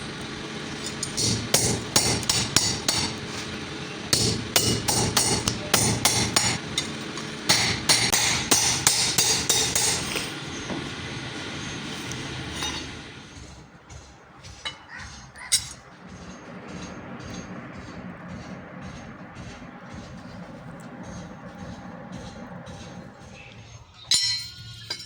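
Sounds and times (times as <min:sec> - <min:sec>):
hammer ringing blows on steel: 0:00.8 - 0:25.0.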